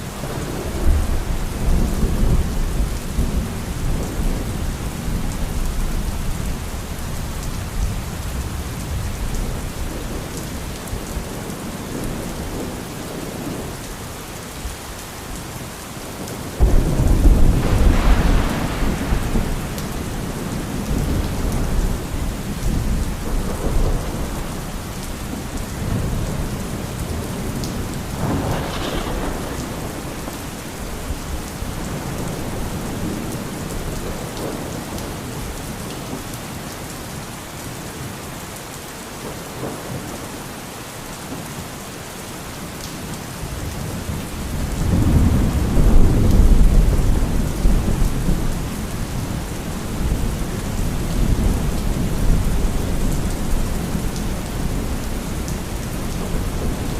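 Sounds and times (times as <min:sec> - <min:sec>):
steady rain: 0:00.0 - 0:56.9
rolling thunder: 0:16.2 - 0:34.8, 0:43.6 - 0:56.9
sharp thunderclap: 0:16.6 - 0:24.6, 0:28.1 - 0:30.6.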